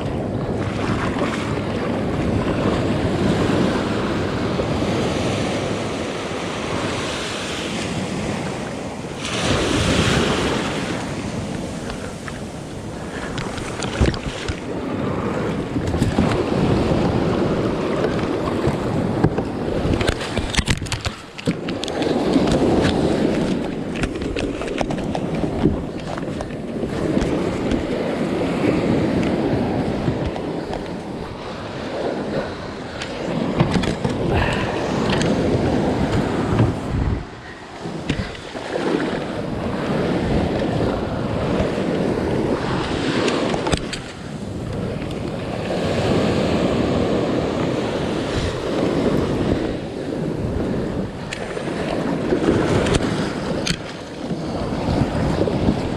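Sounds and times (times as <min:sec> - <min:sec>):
waves and moving water: 0:00.0 - 0:55.9
wind buffeting microphone: 0:00.0 - 0:55.9.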